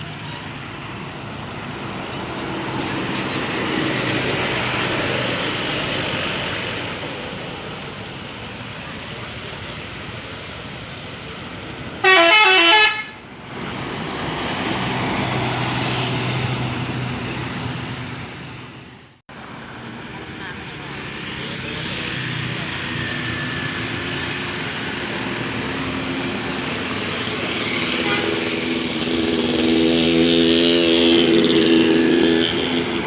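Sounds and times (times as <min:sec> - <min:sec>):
buses engines passing: 0:00.0 - 0:33.0
multi-tone bus horn warble: 0:12.0 - 0:13.2, 0:27.9 - 0:28.8.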